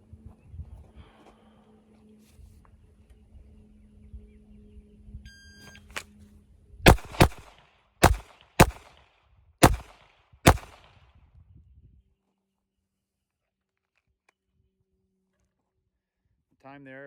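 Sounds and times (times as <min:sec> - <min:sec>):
handgun shots: 0:06.9 - 0:09.0, 0:09.6 - 0:10.9.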